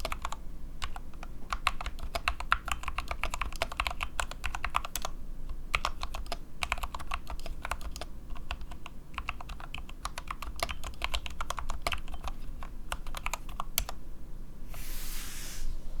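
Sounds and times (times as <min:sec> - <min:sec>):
mechanical keyboard typing: 0:00.0 - 0:05.1, 0:05.7 - 0:14.0
brief hiss: 0:14.7 - 0:16.0.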